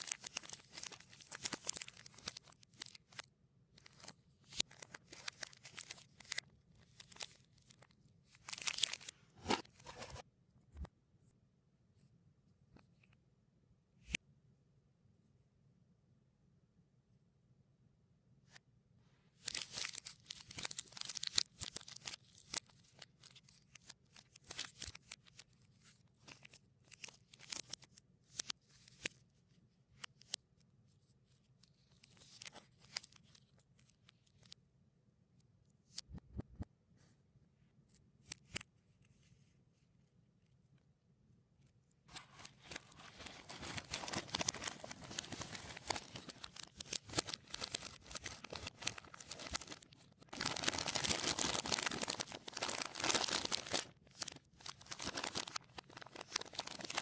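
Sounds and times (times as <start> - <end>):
plastic wrappers crinkling reversed: 42.3 - 57.0.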